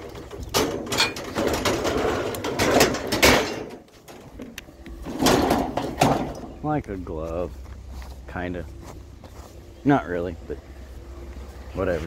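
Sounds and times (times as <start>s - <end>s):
bicycle clattering and scraping: 0.0s - 6.6s.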